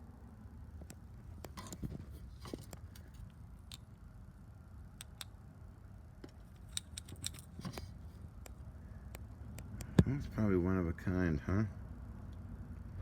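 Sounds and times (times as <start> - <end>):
small parts clicking and tapping: 0.8 - 4.0, 5.0 - 5.4, 6.2 - 10.0.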